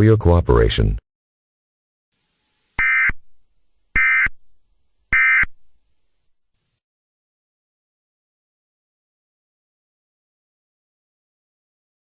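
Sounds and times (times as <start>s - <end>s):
screechy digital data tones: 2.8s - 3.2s, 4.0s - 4.4s, 5.1s - 5.5s.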